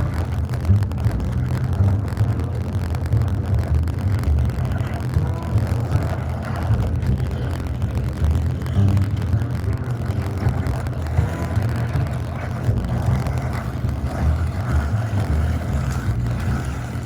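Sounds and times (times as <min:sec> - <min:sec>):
grinding food scraps: 0:04.8 - 0:07.6, 0:08.5 - 0:17.0
garbage disposal motor drone: 0:05.5 - 0:17.0.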